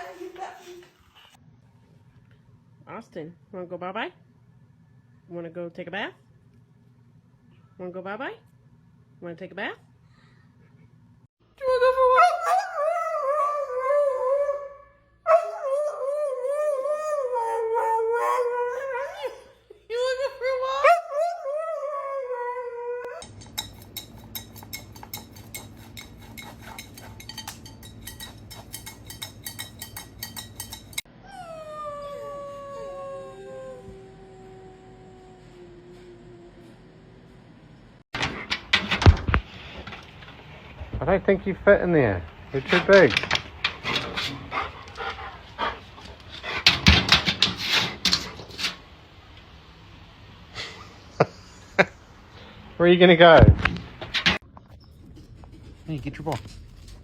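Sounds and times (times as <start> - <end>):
dog howling: 12.0 - 19.5, 31.2 - 36.8.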